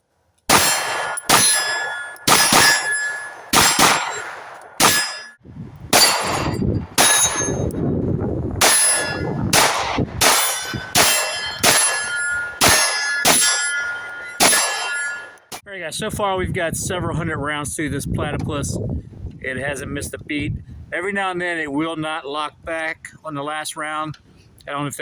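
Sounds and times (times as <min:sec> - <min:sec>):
pistol shots: 0:00.5 - 0:07.7, 0:08.6 - 0:15.4
steel target clanging: 0:00.5 - 0:07.8, 0:08.6 - 0:15.6.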